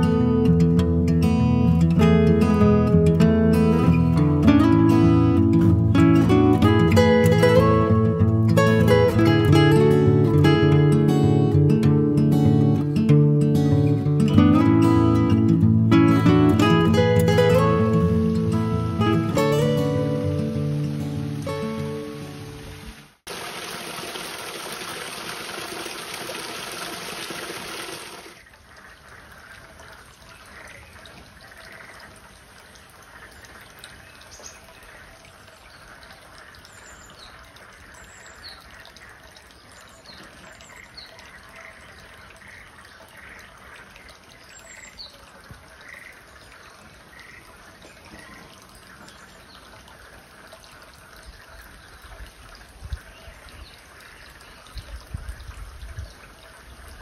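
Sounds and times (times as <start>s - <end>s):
water trickling: 0.0s - 57.0s
water running hard: 18.8s - 28.4s.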